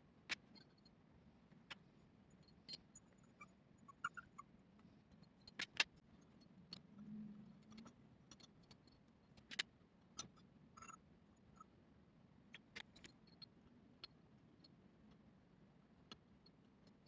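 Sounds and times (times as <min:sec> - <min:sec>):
faint low hum: 0:00.0 - 0:17.0
small clicks of watch parts: 0:07.6 - 0:11.0.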